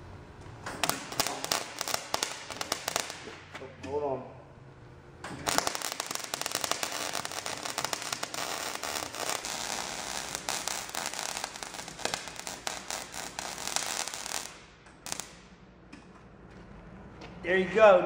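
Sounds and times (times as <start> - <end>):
welder arc crackling: 0.6 - 3.5, 5.3 - 15.5.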